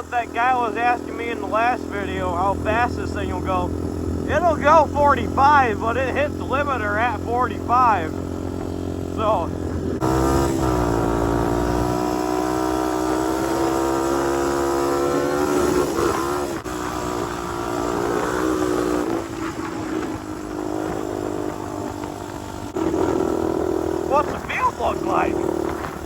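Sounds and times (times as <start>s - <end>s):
quad engine at high revs: 0.0s - 26.0s
wind buffeting on microphone: 25.2s - 26.0s.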